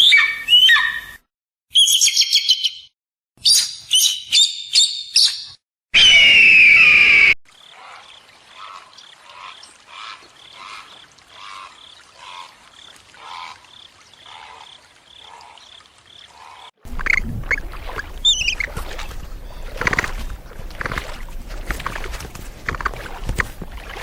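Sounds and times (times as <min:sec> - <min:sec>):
animal calls: 0:16.3 - 0:23.3.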